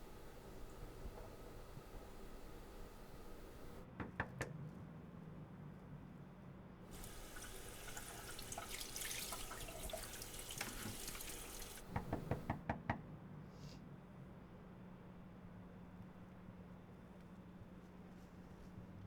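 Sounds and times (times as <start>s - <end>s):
tap water running into sink: 6.9s - 12.6s
knocks: 11.8s - 12.6s.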